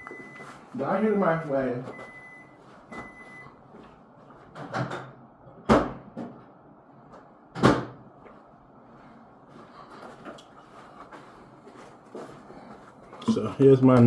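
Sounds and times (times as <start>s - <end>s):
microwave beeping: 0.0s - 3.6s.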